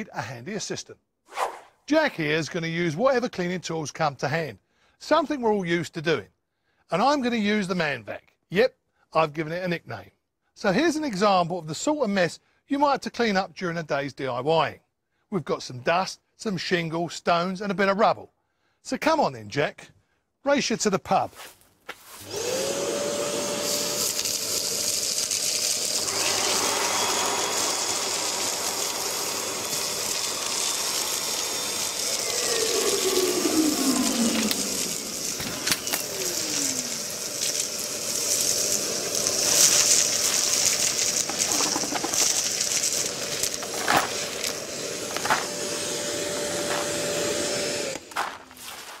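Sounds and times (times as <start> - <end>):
vacuum cleaner motor running: 22.2 - 48.4
falling whistle-like glides: 32.1 - 36.9
debris clicking in vacuum: 34.0 - 38.2, 39.2 - 45.5.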